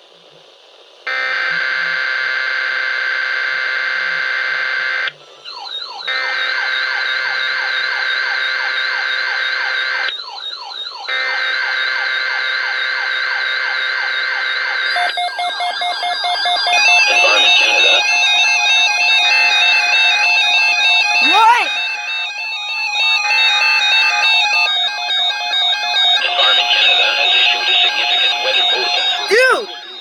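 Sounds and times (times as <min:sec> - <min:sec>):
falling warble alarm: 0:04.2 - 0:30.0
electronic beeping: 0:14.9 - 0:18.4.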